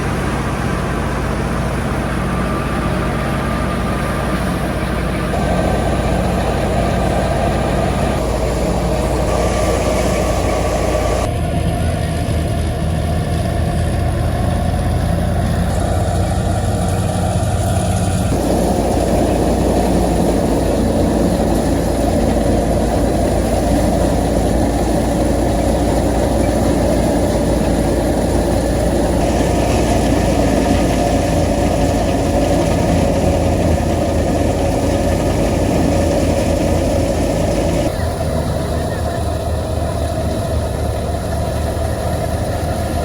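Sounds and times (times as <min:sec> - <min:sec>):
wheat thresher churning: 0:00.0 - 0:43.0.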